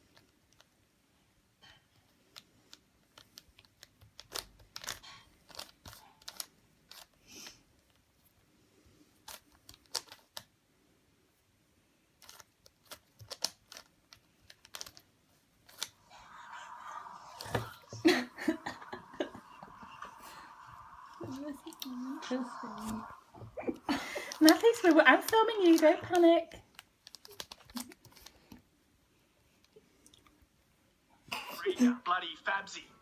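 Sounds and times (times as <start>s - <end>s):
rubik's cube clicking: 2.7s - 7.2s, 9.3s - 10.5s, 12.2s - 15.1s, 24.3s - 28.4s.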